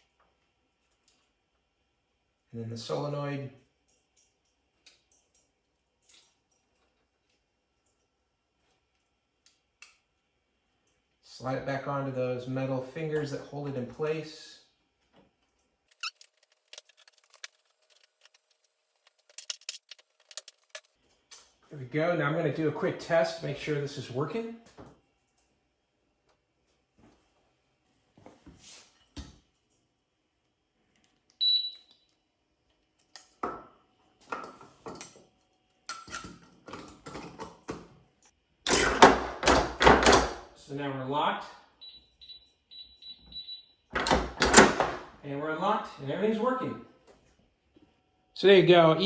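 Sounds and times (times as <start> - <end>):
keypad beeps: 31.4 - 31.9, 41.8 - 43.7.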